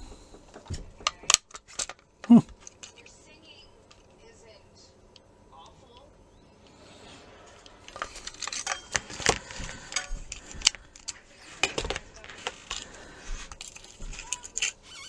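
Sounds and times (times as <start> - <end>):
plastic and metal clicks and rattles: 0.3 - 3.1, 7.6 - 14.8.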